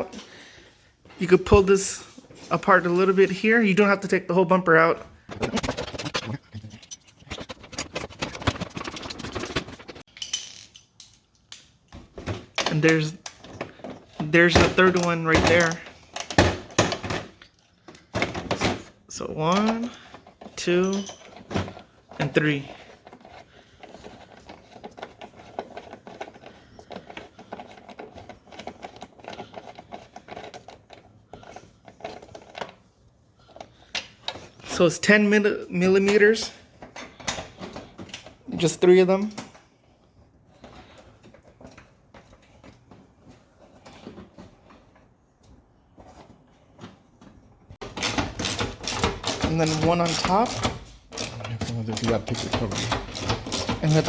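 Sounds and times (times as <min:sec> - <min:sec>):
hand ratchet clicking: 0:47.8 - 0:54.0.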